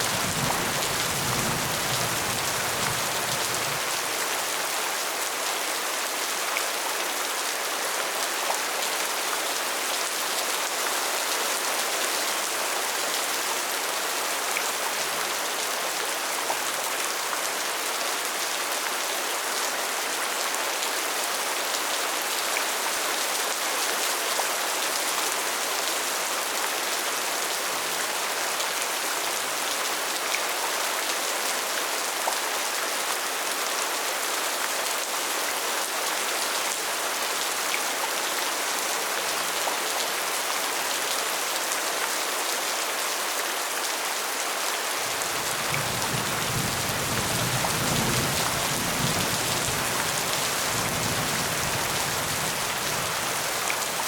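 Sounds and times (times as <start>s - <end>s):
steady rain hiss: 0.0s - 5.4s, 44.3s - 54.0s.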